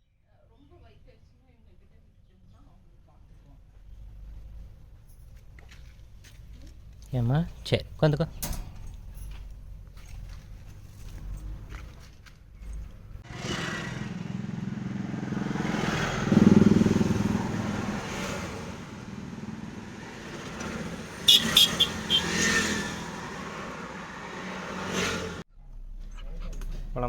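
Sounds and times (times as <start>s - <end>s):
vehicle engine running: 9.2s - 24.1s.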